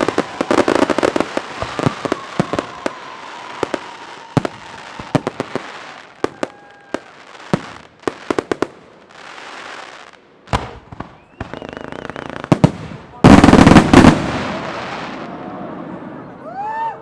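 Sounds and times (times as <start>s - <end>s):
fireworks crackling: 0.0s - 16.2s
firework shells bursting: 12.4s - 15.0s.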